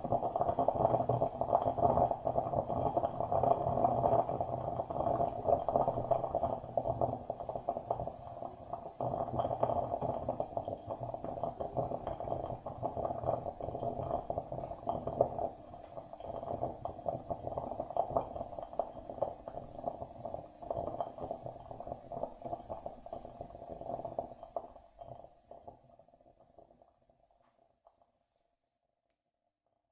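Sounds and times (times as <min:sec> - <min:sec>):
coffee maker gurgling: 0:00.0 - 0:28.6.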